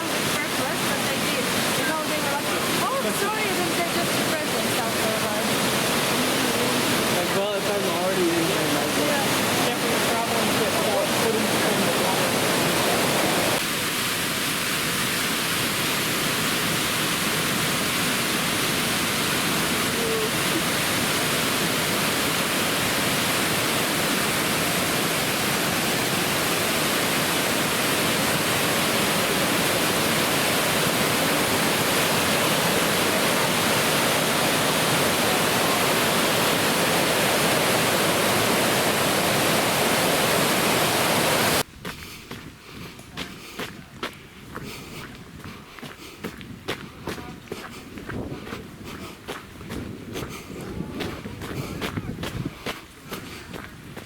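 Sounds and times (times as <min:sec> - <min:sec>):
waterfall rushing: 0:00.0 - 0:41.6.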